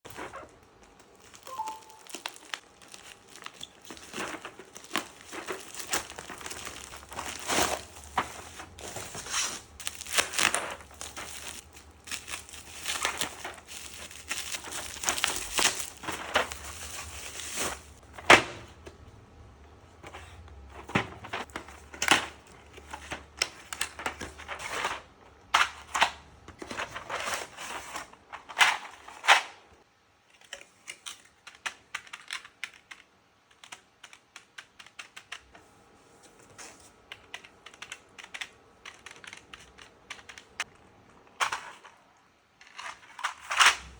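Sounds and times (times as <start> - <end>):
plastic packaging crinkling: 0.1 - 18.0.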